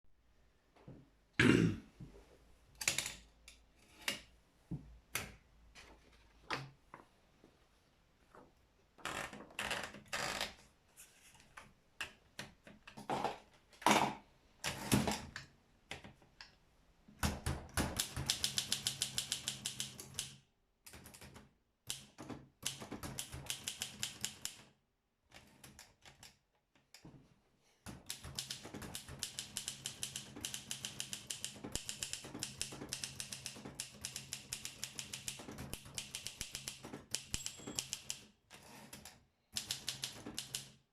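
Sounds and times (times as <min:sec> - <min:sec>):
typewriter strikes and clunks: 0:17.2 - 0:20.3, 0:28.0 - 0:38.2
typewriter typing: 0:17.2 - 0:24.7, 0:27.9 - 0:40.8.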